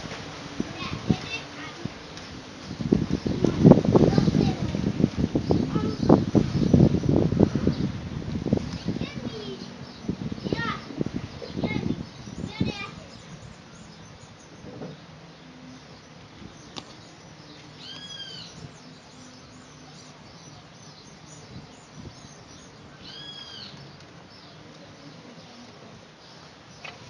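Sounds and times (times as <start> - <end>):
bird whistling call: 17.8 - 19.7, 23.0 - 23.8.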